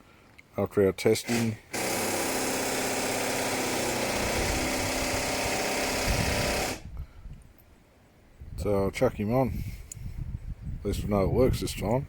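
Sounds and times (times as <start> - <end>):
small electric power tool running: 1.3 - 6.8.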